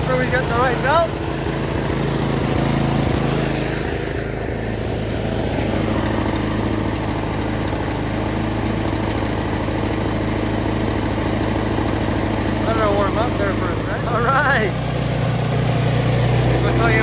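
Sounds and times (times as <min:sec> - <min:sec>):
snow blower engine running: 0:00.0 - 0:17.0.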